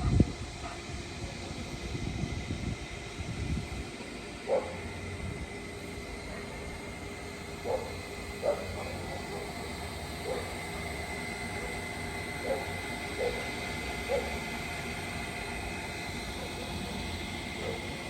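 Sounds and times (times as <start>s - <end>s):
dog barking: 4.5s - 4.8s, 7.6s - 8.8s, 10.2s - 10.5s, 12.4s - 13.5s, 14.1s - 14.3s.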